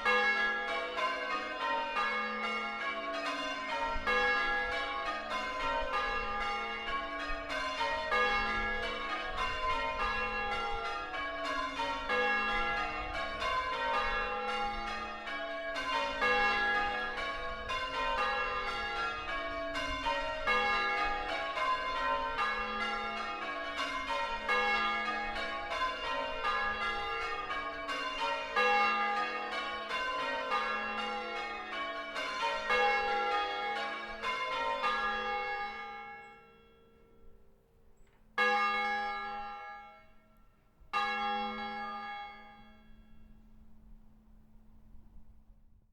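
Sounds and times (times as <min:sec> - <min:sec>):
church bells ringing: 0:00.0 - 0:37.7, 0:38.3 - 0:44.9.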